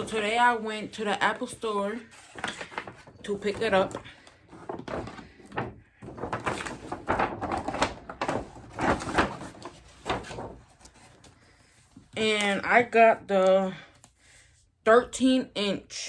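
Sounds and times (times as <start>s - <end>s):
packaging rustling and scraping: 1.8s - 12.1s.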